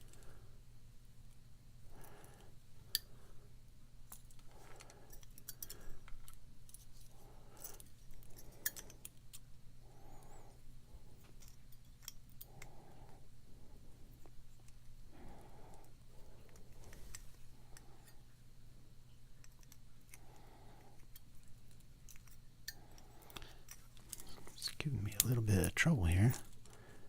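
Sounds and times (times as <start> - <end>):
metal tools clicking in padlock: 5.1 - 6.8.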